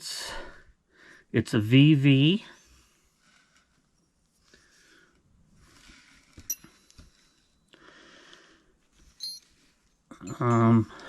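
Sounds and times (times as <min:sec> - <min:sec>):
faint rustling: 0:02.5 - 0:07.7, 0:08.3 - 0:11.0
metal wrenches clinking: 0:09.2 - 0:09.4, 0:10.1 - 0:11.0.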